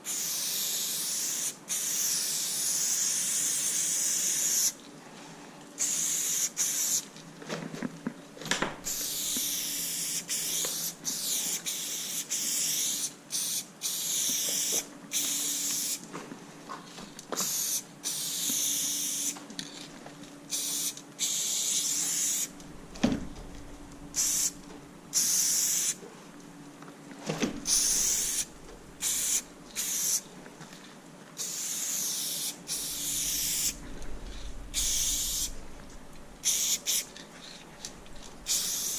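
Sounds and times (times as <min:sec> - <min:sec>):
spray paint can spraying: 0:00.0 - 0:04.8, 0:05.8 - 0:07.1, 0:08.8 - 0:16.0, 0:17.4 - 0:19.4, 0:20.5 - 0:22.5, 0:24.1 - 0:26.0, 0:27.6 - 0:30.2, 0:31.4 - 0:35.6, 0:36.4 - 0:37.1, 0:38.4 - 0:38.9.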